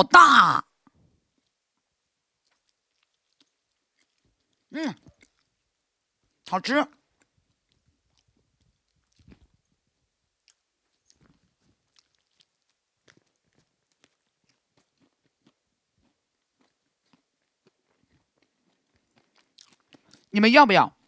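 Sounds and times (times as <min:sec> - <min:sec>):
person chewing with crunches: 0:02.4 - 0:05.6, 0:07.2 - 0:09.7, 0:10.4 - 0:20.3.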